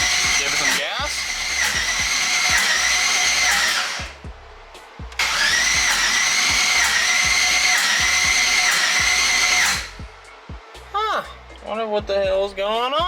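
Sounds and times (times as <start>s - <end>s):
starter motor cranking engine: 0.0s - 4.3s, 5.1s - 10.1s.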